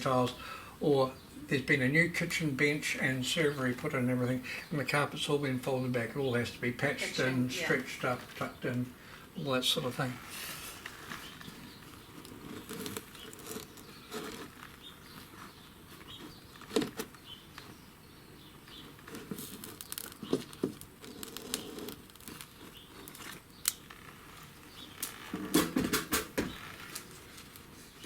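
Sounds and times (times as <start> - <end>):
material rustling and crinkling: 10.0 - 17.9, 18.5 - 28.0.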